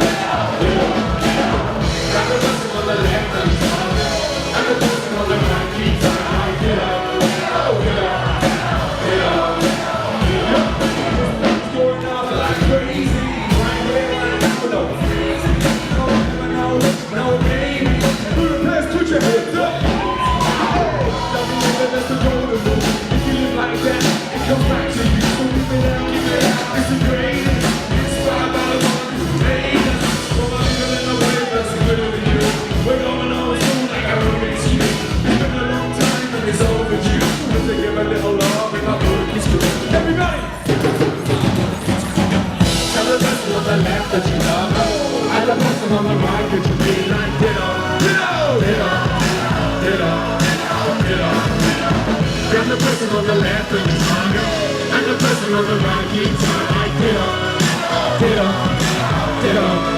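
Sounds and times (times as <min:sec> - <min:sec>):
live pop music with singing: 0:00.0 - 0:59.9.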